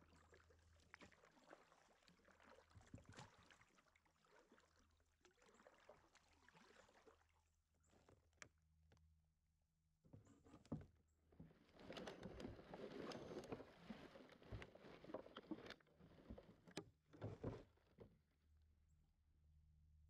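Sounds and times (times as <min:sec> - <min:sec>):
paddle strokes splashing water: 0:00.0 - 0:08.2, 0:11.4 - 0:17.8.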